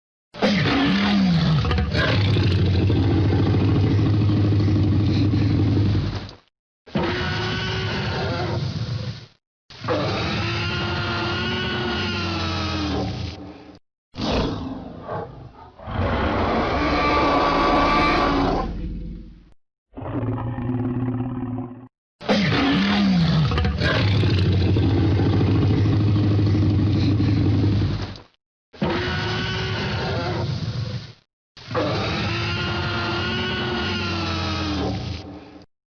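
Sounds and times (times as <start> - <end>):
dinosaur roar: 0.4 - 6.1, 9.8 - 13.3, 14.2 - 19.3, 20.0 - 28.0, 28.8 - 30.5, 31.7 - 35.3.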